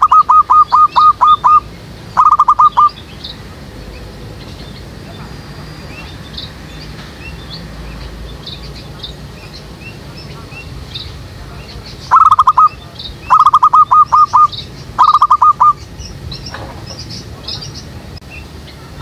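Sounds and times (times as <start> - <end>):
dove cooing: 0.0 - 3.0, 12.1 - 15.8
small birds chirping: 0.0 - 19.0.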